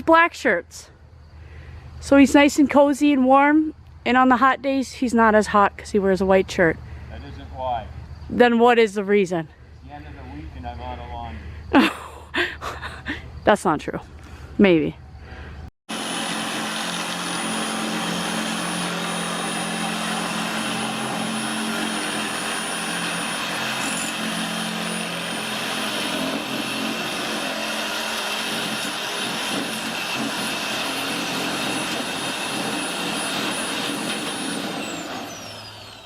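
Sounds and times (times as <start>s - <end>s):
machine running with high whine: 15.9s - 36.0s.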